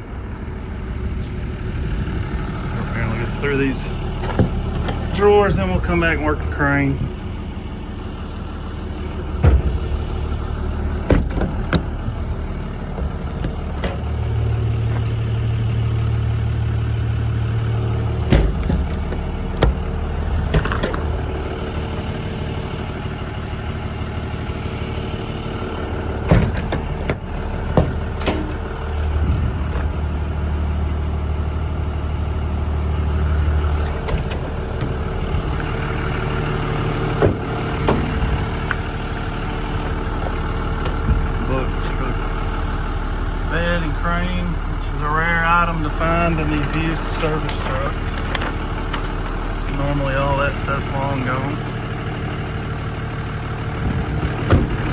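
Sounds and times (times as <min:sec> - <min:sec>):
diesel truck engine idling: 0:00.0 - 0:54.9
metal drawers and doors clicking: 0:11.0 - 0:14.2, 0:18.2 - 0:21.3, 0:26.2 - 0:30.1, 0:33.6 - 0:35.6.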